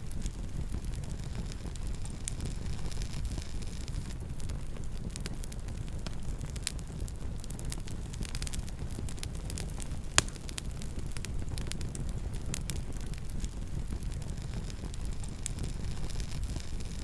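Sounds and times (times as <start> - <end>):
campfire flames rushing: 0.0 - 17.0
fire crackling: 0.0 - 17.0
loud fire pop: 9.6 - 17.0.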